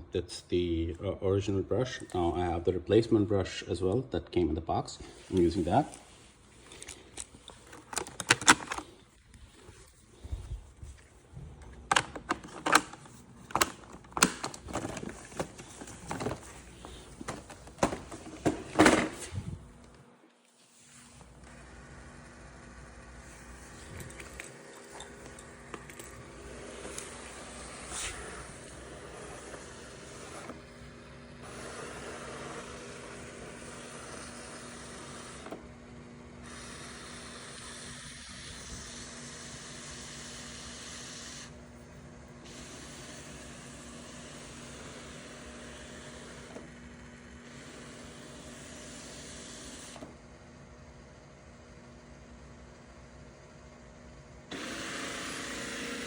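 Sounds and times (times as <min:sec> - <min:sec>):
robot vacuum whirring: 0:21.2 - 0:41.6, 0:42.4 - 0:50.1, 0:54.5 - 0:56.0.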